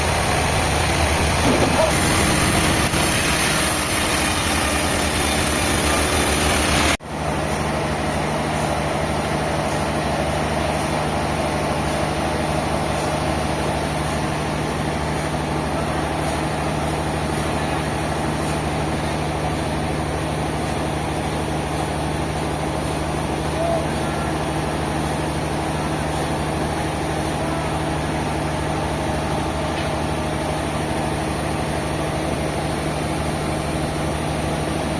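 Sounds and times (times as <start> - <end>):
sawmill machinery humming: 0.0 - 34.9.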